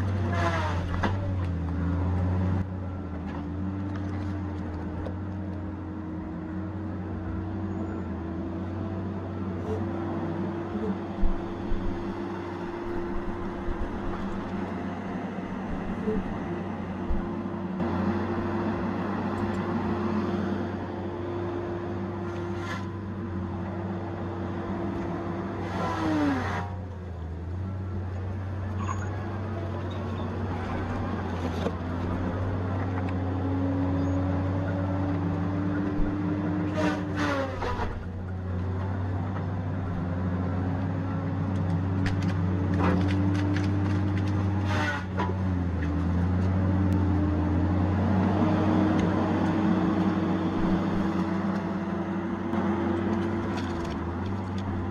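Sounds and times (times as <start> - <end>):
heavy machine engine whining: 0.0 - 54.9
wood crackling and snapping: 41.5 - 45.0, 53.1 - 54.8.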